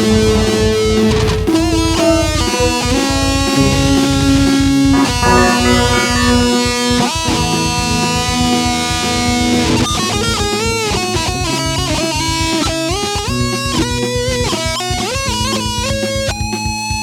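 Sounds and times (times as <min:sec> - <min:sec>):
rock music with electric guitar: 0:00.0 - 0:10.6.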